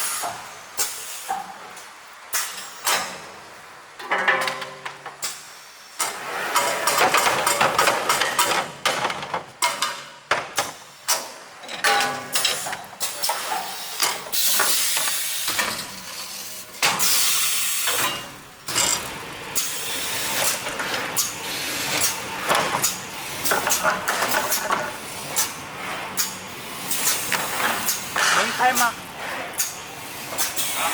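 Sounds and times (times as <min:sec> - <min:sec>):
machine hiss: 0:16.4 - 0:19.0.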